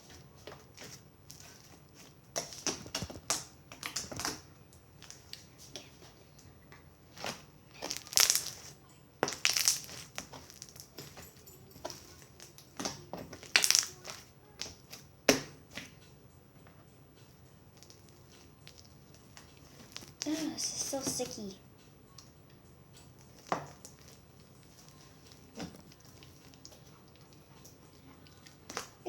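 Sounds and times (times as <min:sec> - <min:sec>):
slime crackling and popping: 0:02.3 - 0:05.5, 0:07.1 - 0:10.9, 0:12.4 - 0:15.9, 0:17.8 - 0:21.5, 0:23.2 - 0:26.8.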